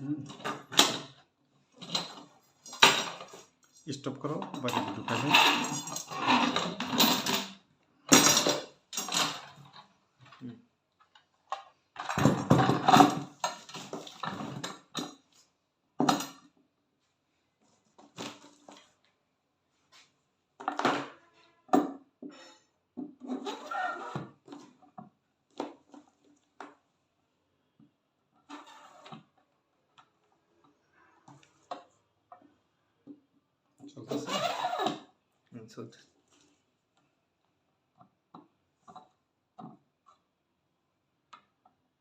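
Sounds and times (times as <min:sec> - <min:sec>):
metal parts clattering: 0:04.6 - 0:09.6.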